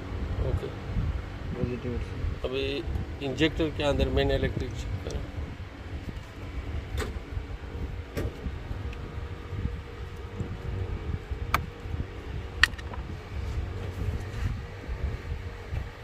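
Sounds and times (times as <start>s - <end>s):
low mechanical rumble: 0.0s - 16.0s.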